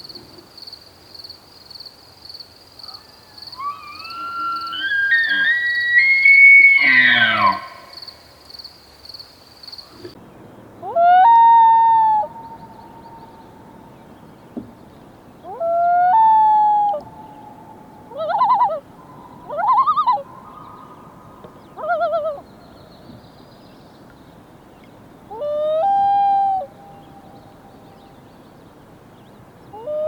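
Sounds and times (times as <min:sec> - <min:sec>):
loon tremolo calls: 0:02.8 - 0:08.1
loons calling: 0:03.5 - 0:08.0, 0:15.4 - 0:22.6.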